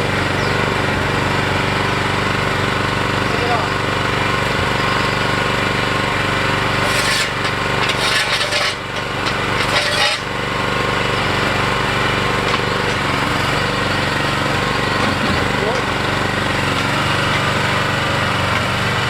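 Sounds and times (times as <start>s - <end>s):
harsh rattling and scraping: 0.0s - 19.0s
mini excavator engine running: 0.0s - 19.0s.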